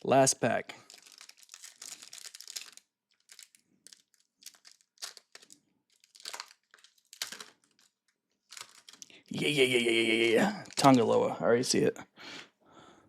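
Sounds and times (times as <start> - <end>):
foil wrapper tearing and crinkling: 0.8 - 9.1.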